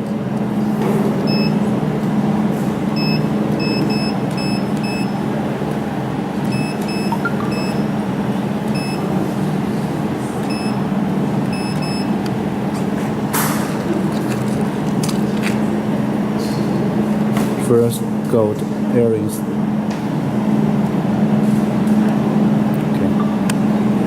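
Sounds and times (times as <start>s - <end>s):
short high beeps: 6.6s - 7.9s.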